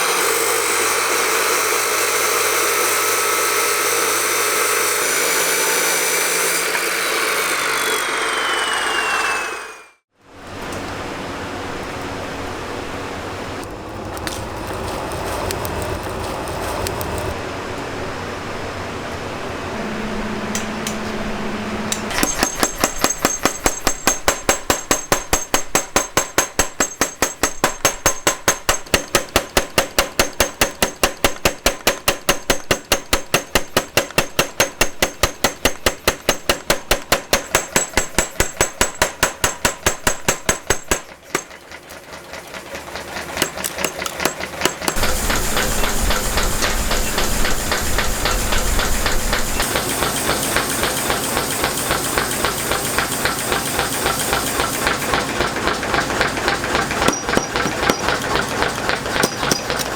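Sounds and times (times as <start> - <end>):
rushing mechanical noise: 0.0 - 28.4, 40.7 - 59.9
hammer blows on steel: 21.8 - 41.6, 44.2 - 59.9.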